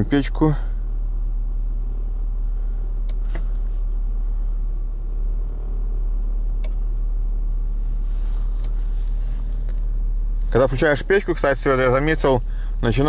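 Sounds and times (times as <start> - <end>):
car engine idling: 0.0 - 13.0
faint rush of air: 7.6 - 13.0.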